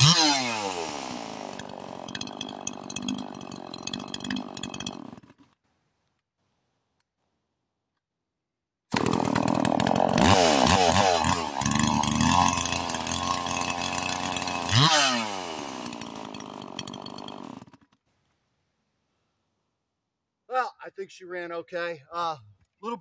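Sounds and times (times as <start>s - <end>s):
chainsaw engine revving: 0.0s - 5.5s, 8.9s - 18.0s.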